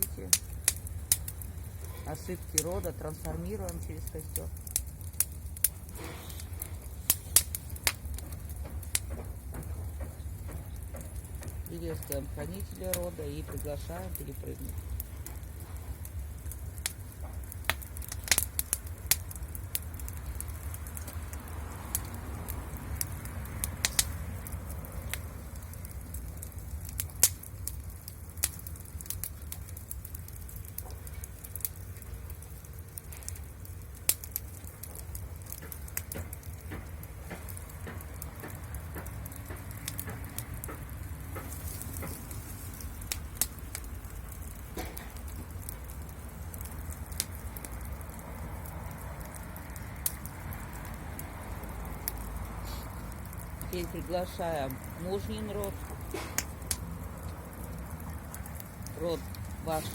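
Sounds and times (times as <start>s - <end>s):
wood fire crackling: 0.0s - 59.9s
sharp pops: 4.6s - 11.7s, 55.6s - 57.7s.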